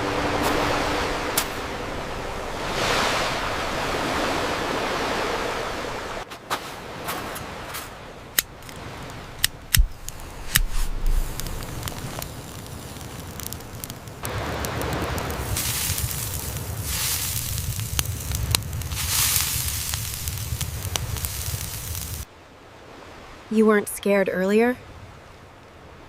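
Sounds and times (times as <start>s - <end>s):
campfire hissing: 8.3s - 22.3s
campfire pops and cracks: 8.3s - 22.3s.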